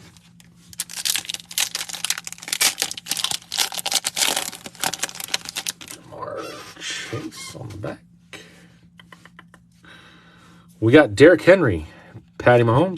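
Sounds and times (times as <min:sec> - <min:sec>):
plastic wrapper tearing and crumpling: 0:00.0 - 0:06.0.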